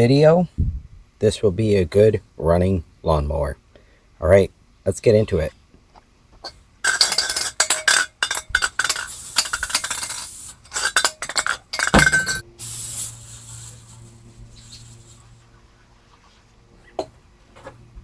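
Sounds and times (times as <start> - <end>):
metallic clinking and clanking: 6.4 - 13.9
short hiss: 8.9 - 11.0, 12.1 - 15.5.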